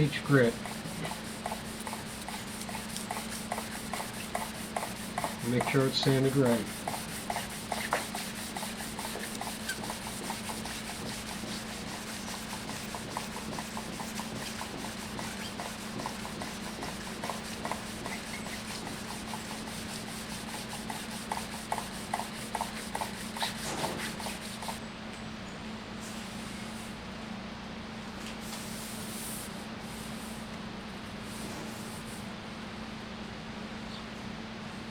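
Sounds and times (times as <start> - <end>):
sandpaper rubbing wood: 0.0 - 24.8
steady low hum: 0.0 - 34.9.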